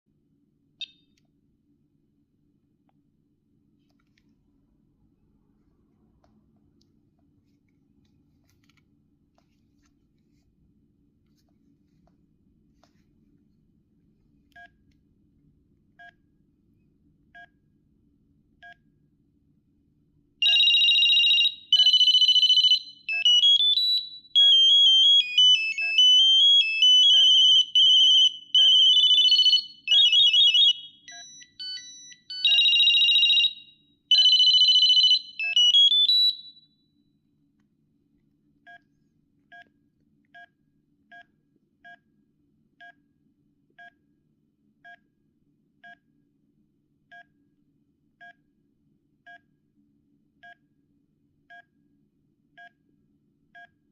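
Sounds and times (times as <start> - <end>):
phone ringtone tunes: 20.4 - 36.5
phone key beeps: 31.1 - 32.9.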